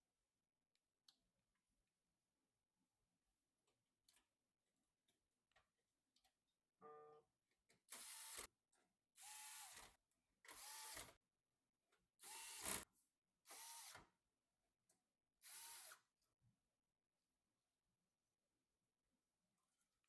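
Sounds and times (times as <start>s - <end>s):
electric screwdriver running: 8.0s - 8.5s, 10.5s - 11.1s, 12.2s - 12.8s.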